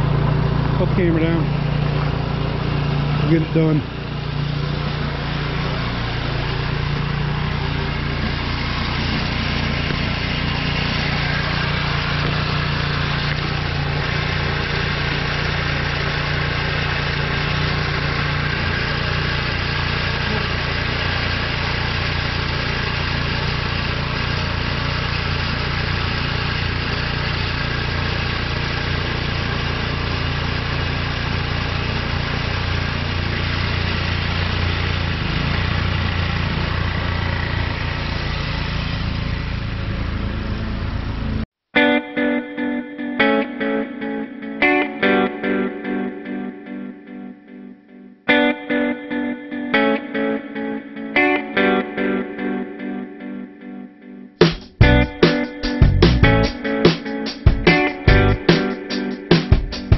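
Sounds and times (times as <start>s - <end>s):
snowblower engine running: 0.0s - 41.5s, 54.8s - 59.9s.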